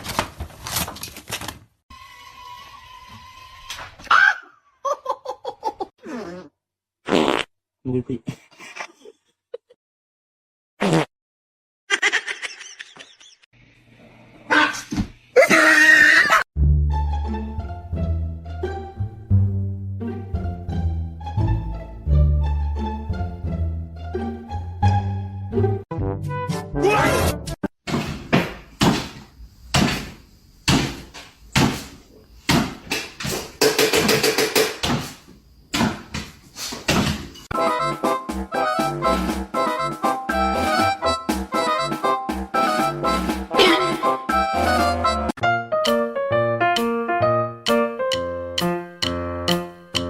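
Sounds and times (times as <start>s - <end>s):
sharp knocks and thumps: 27.8s - 37.5s.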